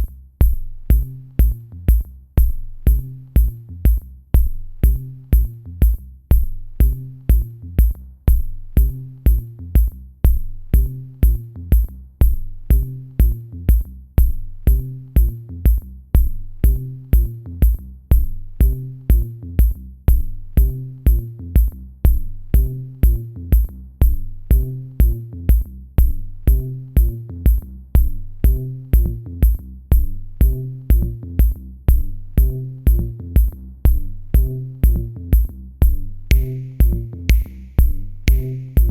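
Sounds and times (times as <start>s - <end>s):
drum machine kick drum: 0.0s - 38.9s
hi-hat ticks: 0.0s - 38.9s
electro dance music: 30.4s - 38.9s.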